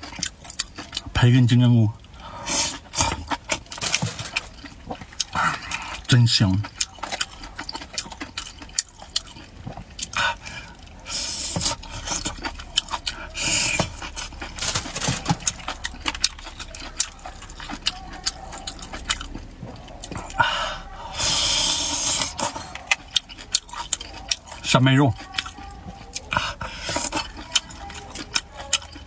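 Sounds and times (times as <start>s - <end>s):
chewing with wet mouth clicks: 0.0s - 29.0s
hissing breaths: 2.0s - 6.1s, 10.0s - 24.7s, 25.5s - 27.6s.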